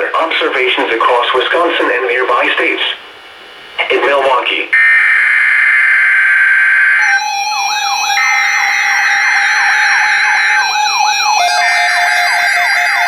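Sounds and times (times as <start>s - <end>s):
buzzing data burst tones: 4.8s - 13.0s
radio siren alarm wail: 4.8s - 13.0s.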